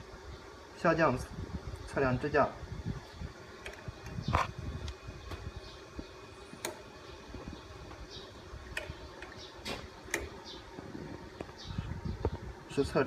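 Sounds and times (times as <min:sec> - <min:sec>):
low background hum: 0:00.0 - 0:13.0
sharp metallic clicks: 0:08.6 - 0:10.6.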